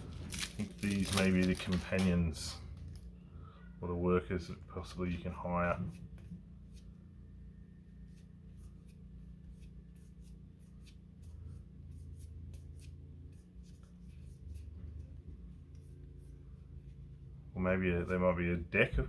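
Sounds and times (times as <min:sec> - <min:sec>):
cards clicking and flipping: 0:00.0 - 0:02.2
low steady hum: 0:00.0 - 0:19.0.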